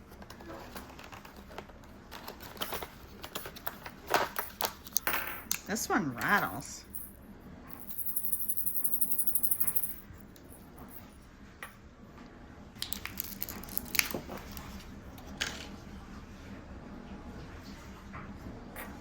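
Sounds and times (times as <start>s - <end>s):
packaging clicks and crinkles: 12.8s - 15.6s.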